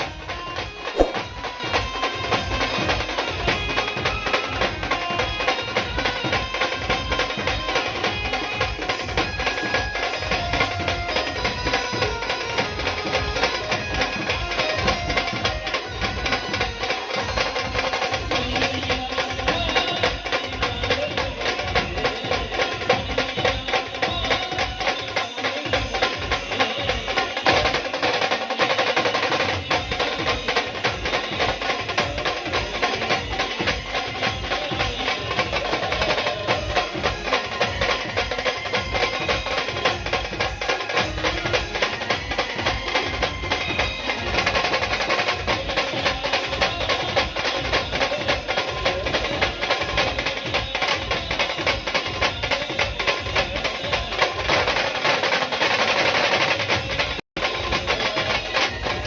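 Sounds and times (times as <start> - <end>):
fast dense drumming: 1.0 - 5.0, 29.1 - 59.0.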